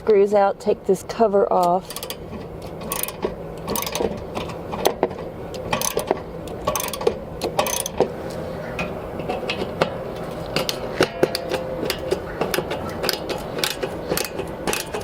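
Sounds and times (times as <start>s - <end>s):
hand tool clicking: 1.6s - 8.1s, 10.5s - 15.0s.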